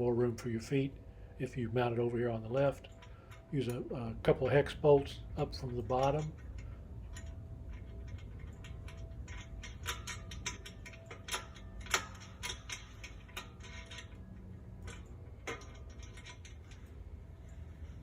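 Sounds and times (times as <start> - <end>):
metallic clicks and taps of bolts: 5.6 - 14.2, 14.8 - 16.8.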